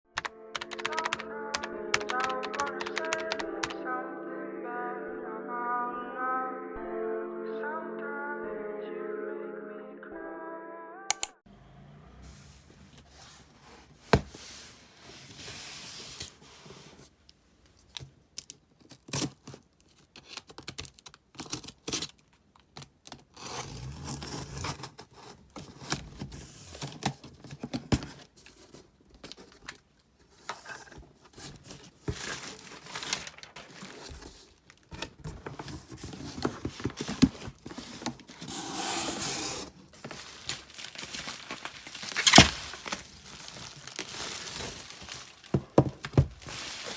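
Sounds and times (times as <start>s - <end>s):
packaging tearing and crinkling: 18.4s - 22.2s, 32.2s - 35.1s, 39.4s - 46.9s.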